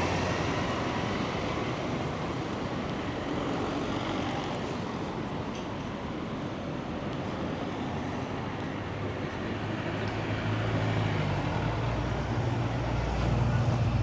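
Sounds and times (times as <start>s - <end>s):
vehicle engine hum approaching: 9.4s - 14.0s.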